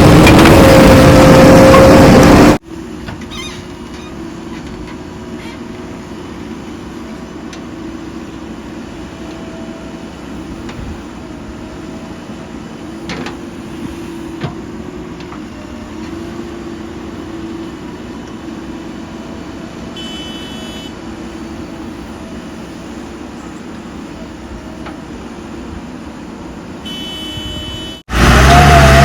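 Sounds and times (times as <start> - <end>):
diesel engine running: 0.0 - 29.0
brief high-pitched tone: 26.9 - 28.0.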